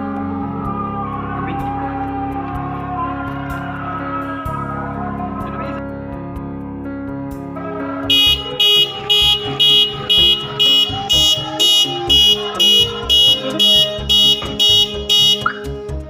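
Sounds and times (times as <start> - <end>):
background music: 0.0 - 16.0
car horn short beeps: 8.1 - 15.8.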